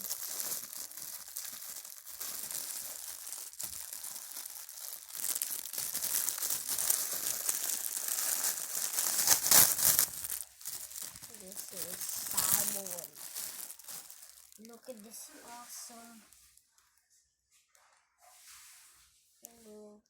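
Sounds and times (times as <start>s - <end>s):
packaging crinkling and tearing: 0.0s - 15.2s.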